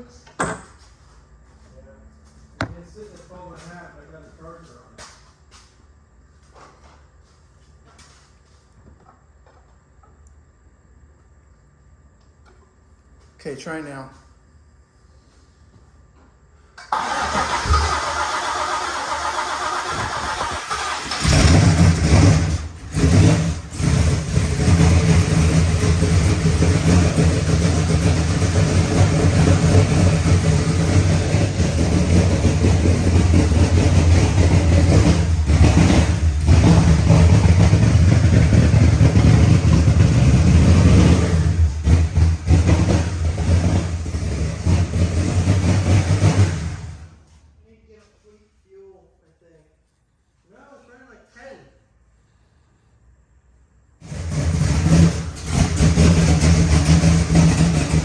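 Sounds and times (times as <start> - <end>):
car starter cranking: 16.8 - 24.6
car engine running: 19.6 - 47.1, 54.0 - 58.0.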